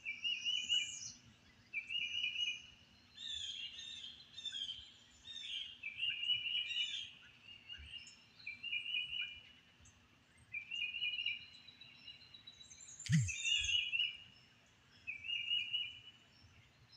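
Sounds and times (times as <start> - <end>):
high bird chirps: 13.1 - 13.8
songbird trilling: 13.1 - 14.0.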